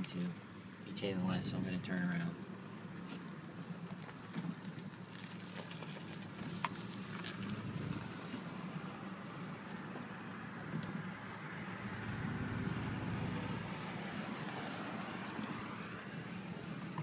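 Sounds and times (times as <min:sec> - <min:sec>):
road noise: 0:00.0 - 0:17.0
car engine from inside cabin: 0:06.1 - 0:17.0.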